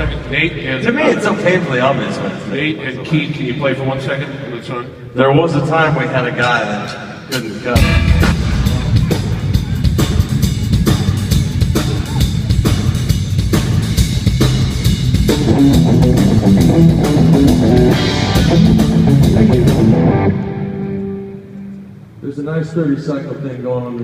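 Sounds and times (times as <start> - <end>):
drum kit beat: 7.3 - 21.3
bass guitar line: 7.8 - 22.2.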